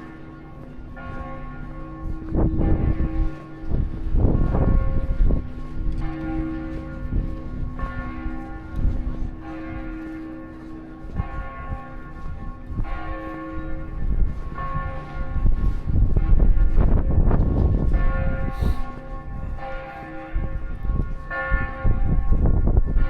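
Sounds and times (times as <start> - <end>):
church bell tolling: 0.0 - 23.0.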